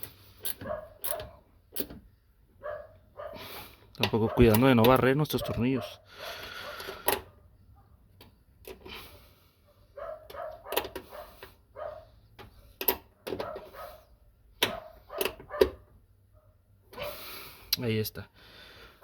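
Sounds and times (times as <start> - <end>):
hand tool clicking and clinking: 0.0 - 2.1, 4.0 - 5.7.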